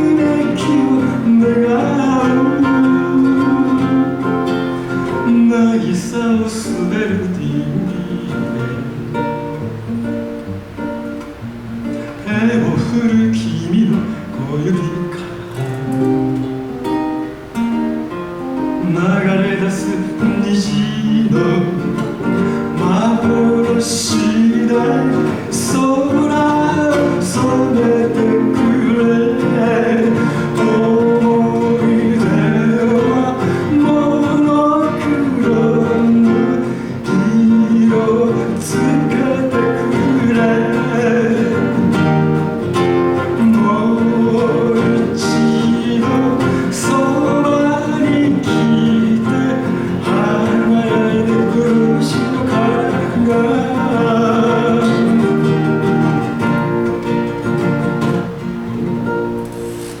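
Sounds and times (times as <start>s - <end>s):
person singing: 0.0s - 9.2s, 18.8s - 55.9s
acoustic guitar strumming: 0.0s - 60.0s.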